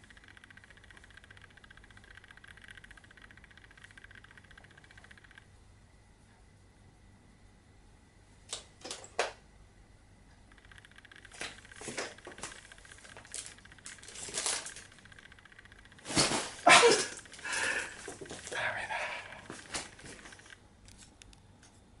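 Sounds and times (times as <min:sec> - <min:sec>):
sharp clicks: 0:00.0 - 0:05.5, 0:10.5 - 0:16.1.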